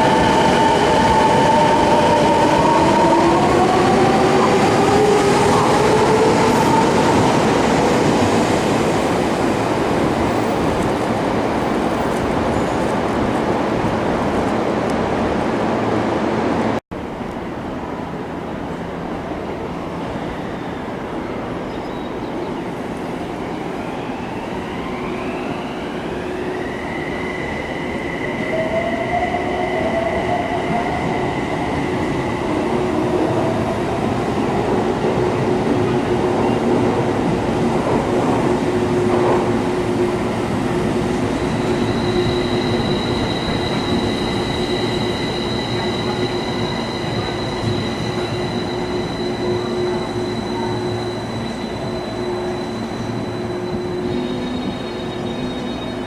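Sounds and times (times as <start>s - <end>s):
wheel squeal: 41.2s - 56.0s.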